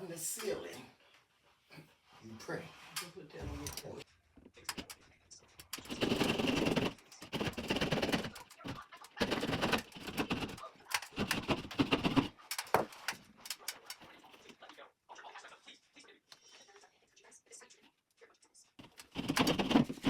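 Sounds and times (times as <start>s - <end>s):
scattered clicks: 3.6s - 14.8s
drywall saw rasping strokes: 5.6s - 13.9s.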